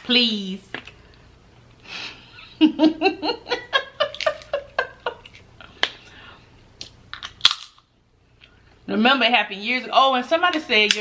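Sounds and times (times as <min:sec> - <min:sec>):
woman laughing: 0:02.0 - 0:05.4.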